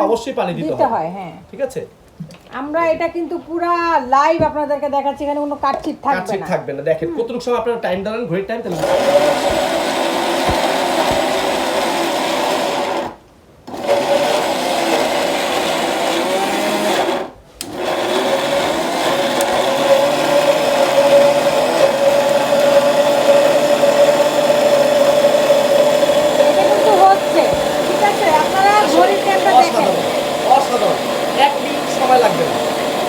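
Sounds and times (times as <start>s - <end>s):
mixer grinder motor whining: 8.7s - 33.0s.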